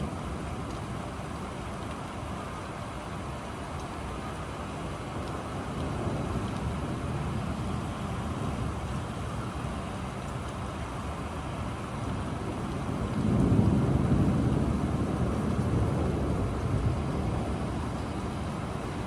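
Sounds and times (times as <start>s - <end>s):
steady rain: 0.0s - 19.0s
low rumble of thunder: 5.7s - 19.0s.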